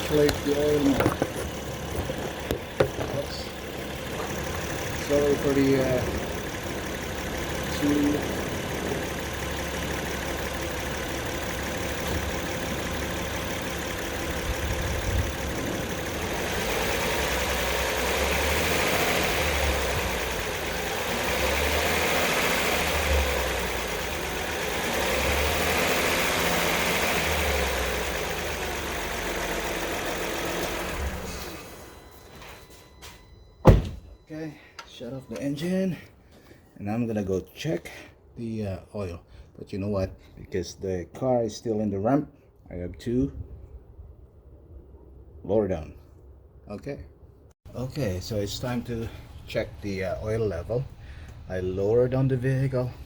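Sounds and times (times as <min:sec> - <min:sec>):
car engine revving: 0:00.0 - 0:31.8.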